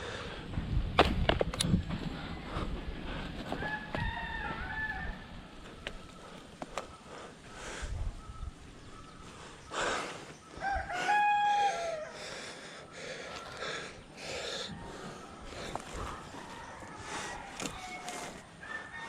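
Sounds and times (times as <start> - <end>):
faint outdoor noises: 0.0 - 19.0
rooster crowing: 3.6 - 5.5, 10.6 - 12.4, 16.0 - 19.0.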